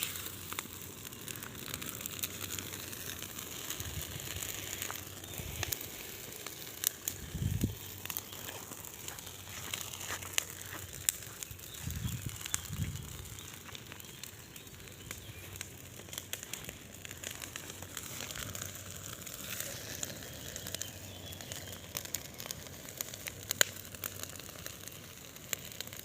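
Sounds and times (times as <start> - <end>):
bonfire crackling and popping: 0.0 - 26.0.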